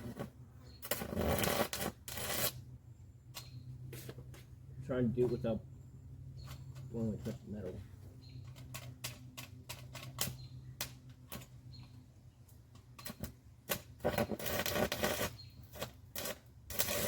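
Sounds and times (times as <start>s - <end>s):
welding arc crackling: 13.2s - 17.0s.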